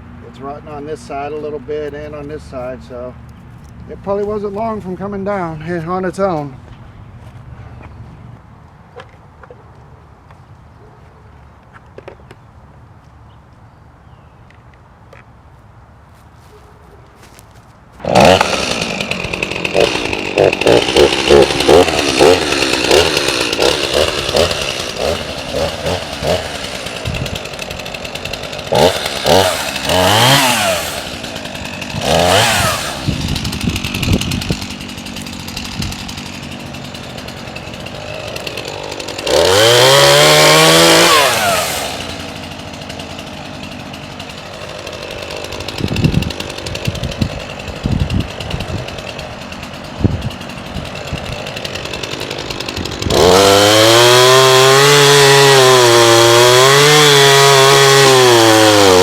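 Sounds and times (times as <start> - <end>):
chainsaw idling and revving: 0.1 - 6.6, 18.0 - 59.0
chainsaw cutting wood: 18.0 - 59.0.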